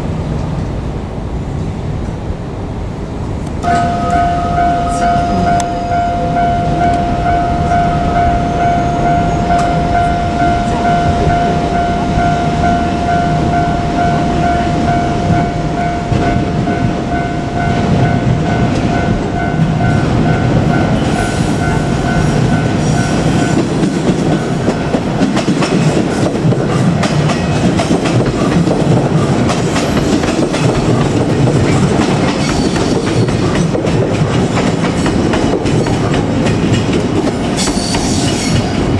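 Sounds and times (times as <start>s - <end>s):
electric train running past: 0.0s - 38.9s
wheels clacking over rail joints: 3.4s - 38.9s
steady high ringing tone: 3.6s - 25.4s.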